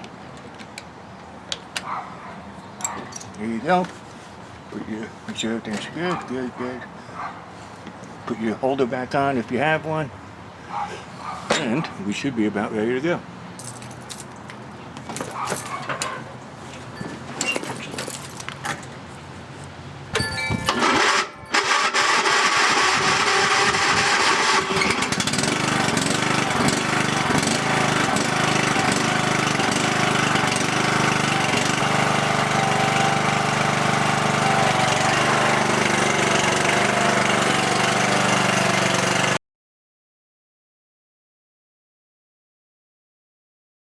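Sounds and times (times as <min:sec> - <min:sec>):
lawn tractor engine starting and running: 0:20.2 - 0:39.4.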